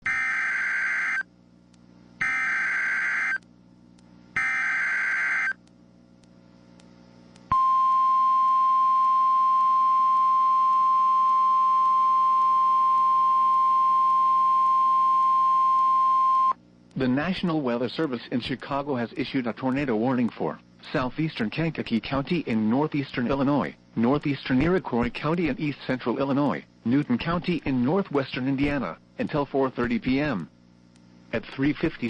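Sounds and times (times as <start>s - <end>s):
screechy digital data tones: 0.0s - 1.3s, 2.2s - 3.4s, 4.4s - 5.6s
steady single-pitch alarm tone: 0.0s - 1.3s, 2.2s - 3.4s, 4.4s - 5.6s, 7.5s - 16.6s.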